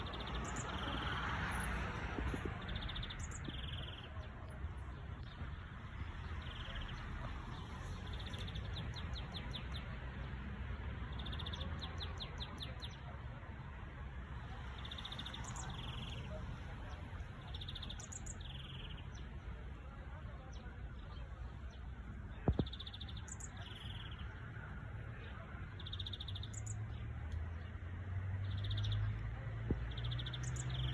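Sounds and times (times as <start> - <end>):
songbird singing trills: 0.0 - 1.8, 2.4 - 10.0, 11.0 - 13.1, 14.7 - 19.4, 22.5 - 24.5, 25.6 - 27.8, 28.4 - 30.9.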